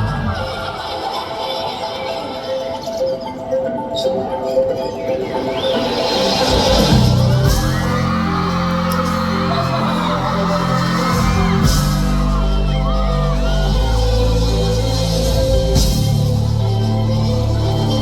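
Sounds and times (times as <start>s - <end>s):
audience whooping and screaming: 0.0s - 2.4s, 5.3s - 18.0s
live band playing: 5.3s - 18.0s.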